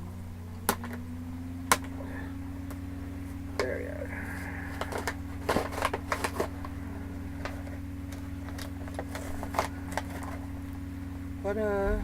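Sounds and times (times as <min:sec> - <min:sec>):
steady low hum: 0:00.0 - 0:12.0
packaging clicks and crinkles: 0:04.3 - 0:10.8.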